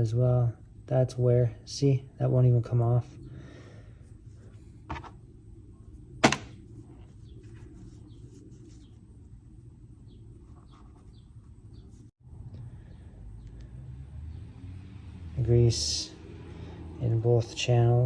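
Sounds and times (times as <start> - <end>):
low steady hum: 0.0 - 13.9.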